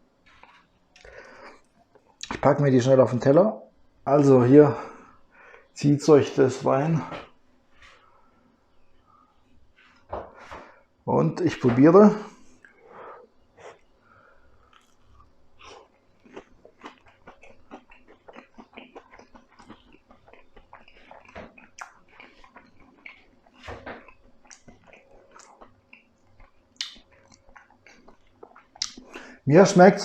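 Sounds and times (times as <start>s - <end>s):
person chewing crunchy food: 13.6s - 29.4s.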